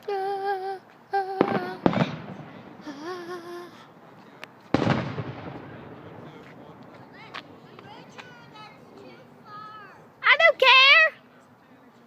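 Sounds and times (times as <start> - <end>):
fireworks bursting with bangs: 1.3 - 9.2.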